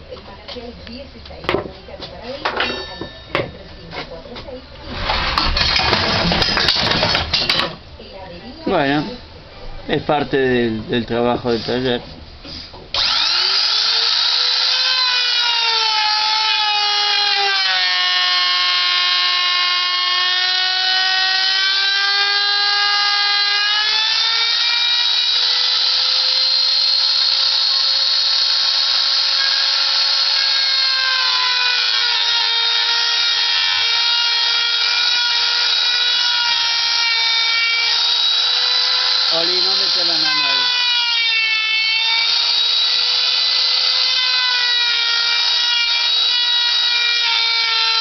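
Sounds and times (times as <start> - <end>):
router motor whining while cutting wood: 12.9 - 48.0.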